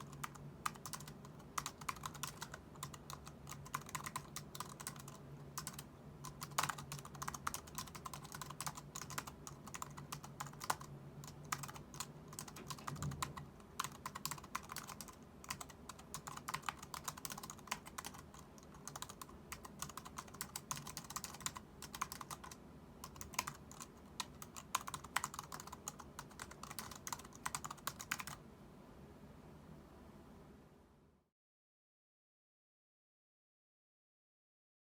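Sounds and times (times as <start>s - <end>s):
keyboard keys clacking: 0.0s - 23.9s.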